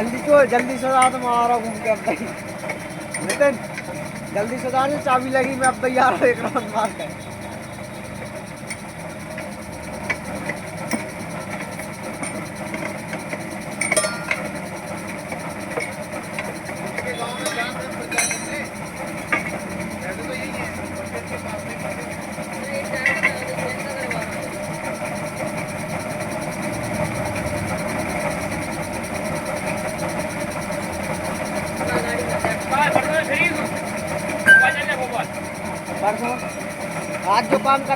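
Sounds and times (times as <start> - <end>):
engine idling: 0.0 - 37.9
metallic clinks: 13.8 - 14.6, 34.5 - 35.0.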